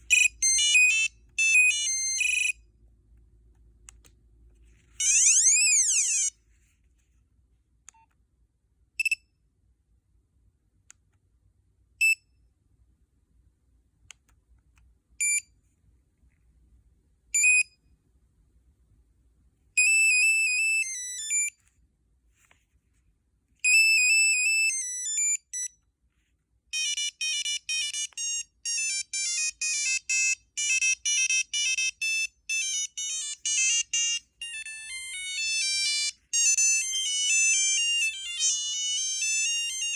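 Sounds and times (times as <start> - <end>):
cellphone ringtones: 0.1 - 2.6, 5.0 - 6.3, 26.7 - 39.9.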